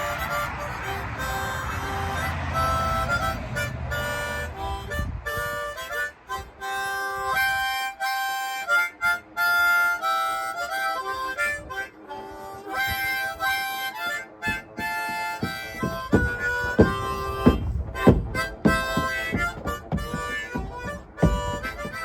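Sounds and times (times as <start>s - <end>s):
harmonica music: 0.0s - 22.0s
low thumps: 0.2s - 7.5s, 14.4s - 22.0s.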